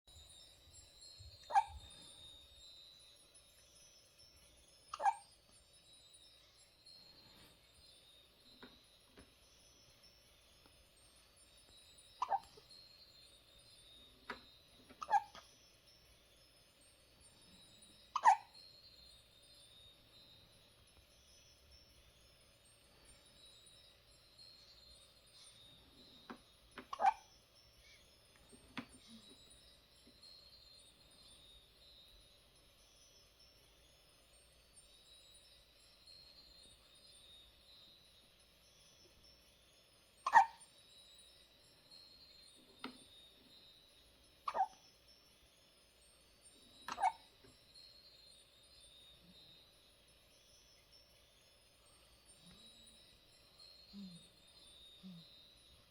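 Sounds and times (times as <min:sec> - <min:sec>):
baby voice squeak: 0:01.4 - 0:01.9, 0:05.0 - 0:05.3, 0:12.2 - 0:12.6, 0:15.0 - 0:15.4, 0:18.2 - 0:18.6, 0:26.9 - 0:27.3, 0:40.3 - 0:40.6, 0:44.5 - 0:44.8, 0:46.9 - 0:47.3
baby hiccuping: 0:18.2 - 0:18.5, 0:26.9 - 0:27.3, 0:40.2 - 0:40.6, 0:46.9 - 0:47.3.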